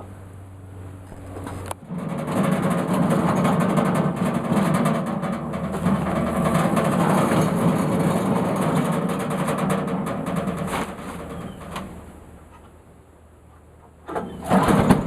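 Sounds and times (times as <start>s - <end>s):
sawmill running: 1.2s - 12.1s.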